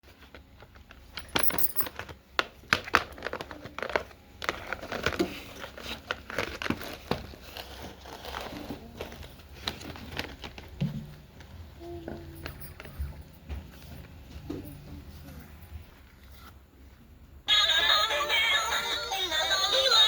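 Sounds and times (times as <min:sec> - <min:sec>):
plastic packaging crinkling: 0:00.2 - 0:10.8.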